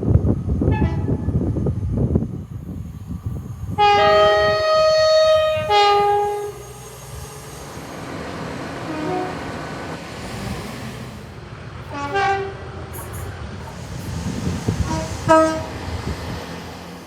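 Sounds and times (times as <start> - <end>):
train rumbling: 0.0 - 17.0
train horn blasts: 0.7 - 1.4, 3.7 - 6.9, 8.7 - 10.0, 11.9 - 13.0, 14.7 - 15.8.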